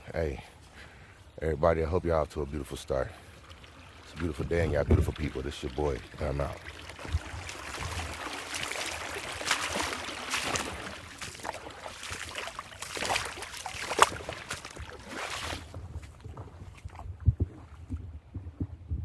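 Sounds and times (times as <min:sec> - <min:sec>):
creek babbling over rocks: 0:02.2 - 0:15.7
water splashing and gurgling: 0:02.4 - 0:18.0.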